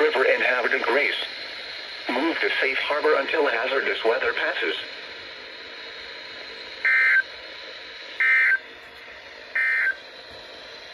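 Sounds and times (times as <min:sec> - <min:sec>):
radio hiss: 0:00.0 - 0:10.9
digital data tone bursts: 0:06.8 - 0:07.3, 0:08.2 - 0:08.6, 0:09.5 - 0:10.0.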